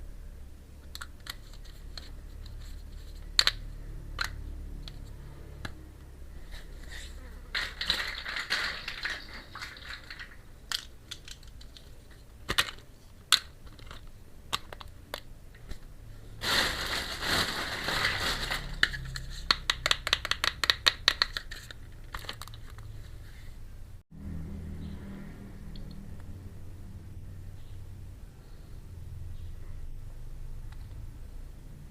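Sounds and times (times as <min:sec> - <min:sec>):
plastic packaging crinkling: 0:07.5 - 0:12.0, 0:16.4 - 0:19.4
clicks of small pieces: 0:07.6 - 0:15.8, 0:18.0 - 0:22.9.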